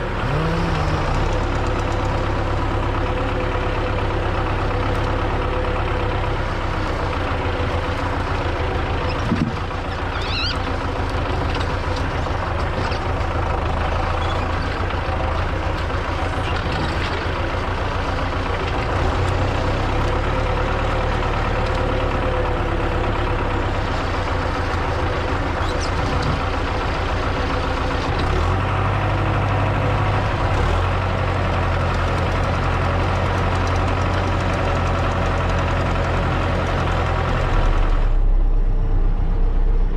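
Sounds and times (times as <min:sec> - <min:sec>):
tractor diesel engine running: 0:00.0 - 0:39.9
short engine knock: 0:09.1 - 0:10.3.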